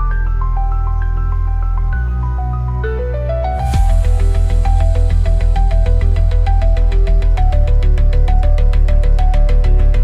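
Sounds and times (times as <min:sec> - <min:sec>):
sustained bass: 0:00.0 - 0:10.0
steady drum beat: 0:03.6 - 0:07.0.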